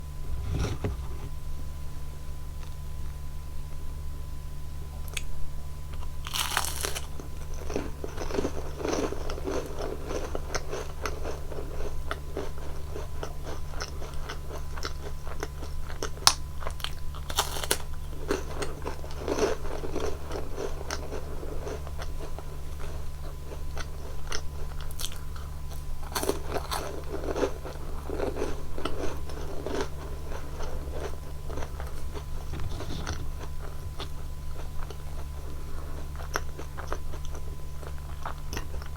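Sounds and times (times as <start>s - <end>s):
low hum: 0.0s - 5.8s
crunching cookie bites: 5.0s - 38.9s
crunchy chewing: 5.0s - 38.9s.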